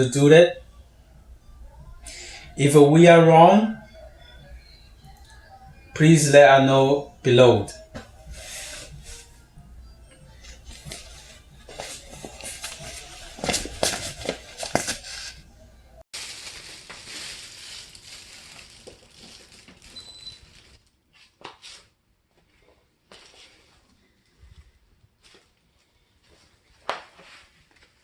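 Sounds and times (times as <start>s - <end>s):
crinkly rustling: 16.1s - 21.0s.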